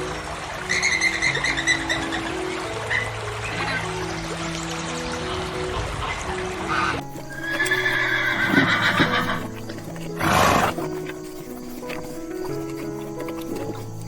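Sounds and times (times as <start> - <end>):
background music with held notes: 0.0 - 14.0
horse whinnying: 7.1 - 13.9.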